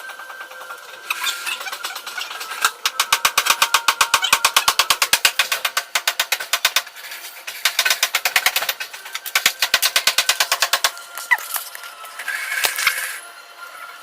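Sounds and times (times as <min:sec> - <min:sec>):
rapid sharp cracks: 0:01.8 - 0:11.6.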